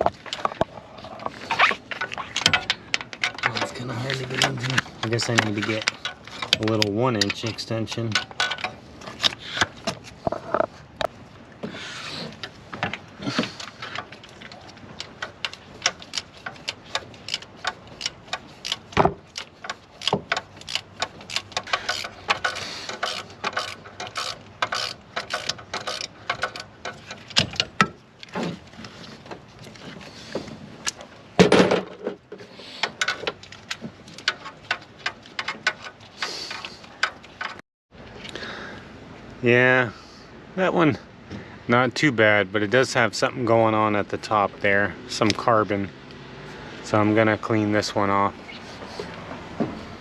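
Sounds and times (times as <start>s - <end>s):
metal tools knocking: 2.0s - 10.7s.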